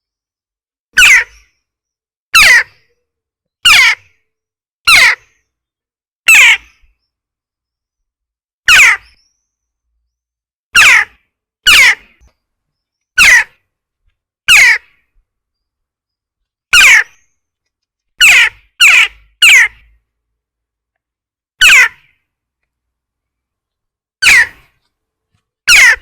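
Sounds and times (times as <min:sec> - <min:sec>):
jackdaw calling: 0:01.0 - 0:01.6, 0:02.4 - 0:03.0, 0:03.6 - 0:04.2, 0:04.9 - 0:05.4, 0:06.3 - 0:06.9, 0:08.7 - 0:09.5, 0:10.8 - 0:12.3, 0:13.2 - 0:13.6, 0:14.5 - 0:15.0, 0:16.7 - 0:17.4, 0:18.2 - 0:20.0, 0:21.6 - 0:22.2, 0:24.2 - 0:24.9, 0:25.7 - 0:26.0.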